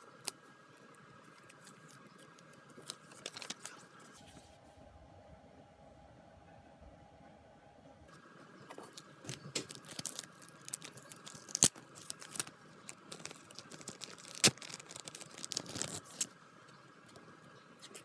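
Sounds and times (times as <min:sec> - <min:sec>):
packaging crinkling and tearing: 0:01.4 - 0:03.9, 0:08.8 - 0:16.3.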